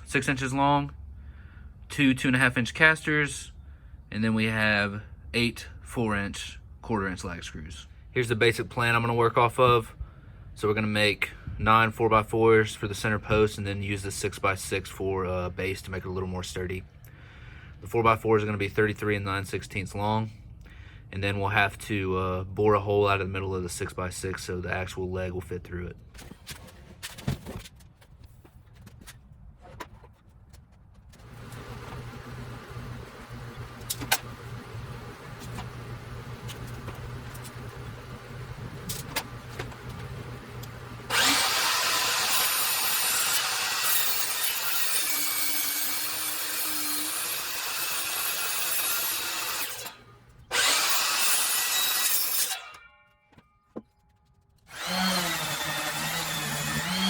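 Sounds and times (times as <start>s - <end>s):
power saw cutting wood: 31.2s - 53.0s, 54.7s - 57.0s.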